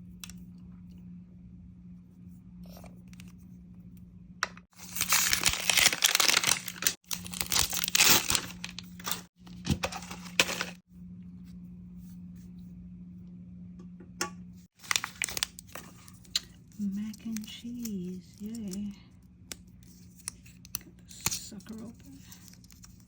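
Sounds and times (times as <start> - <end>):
steady low hum: 0.0 - 5.4, 6.7 - 23.0
packaging tearing and crinkling: 4.8 - 10.8, 14.8 - 16.5, 20.2 - 23.0.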